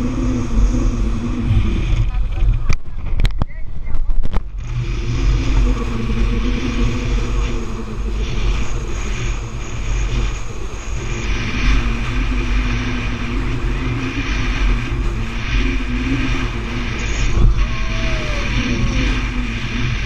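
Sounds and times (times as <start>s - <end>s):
speedboat engine running: 0.0s - 20.0s
rushing water noise: 4.4s - 20.0s.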